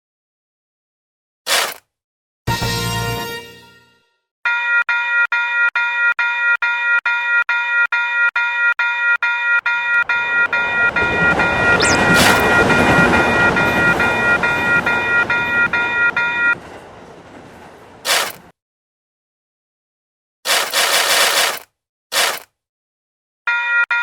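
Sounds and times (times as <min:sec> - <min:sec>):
railroad crossing bell ringing: 0:09.6 - 0:18.5
train passing: 0:09.7 - 0:18.5
short loud burst: 0:11.4 - 0:15.6.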